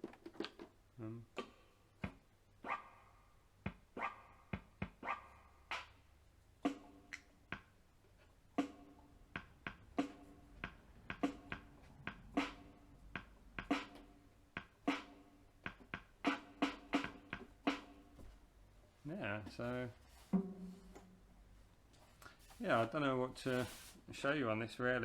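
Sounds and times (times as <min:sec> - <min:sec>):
electronic keyboard drum hits: 0:03.6 - 0:05.1, 0:06.6 - 0:07.7, 0:08.6 - 0:18.4, 0:20.3 - 0:21.3.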